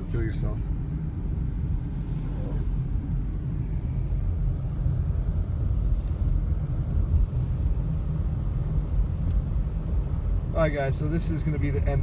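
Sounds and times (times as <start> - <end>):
car driving rumble inside cabin: 0.0 - 12.0
faint tick: 9.2 - 9.5.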